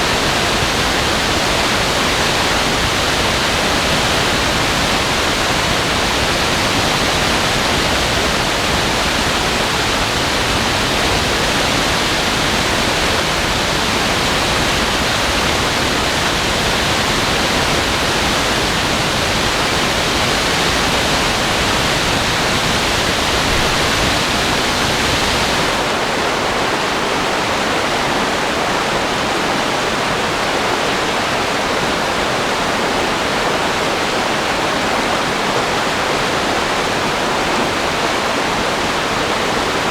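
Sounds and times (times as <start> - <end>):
creek water roaring: 0.0 - 39.9.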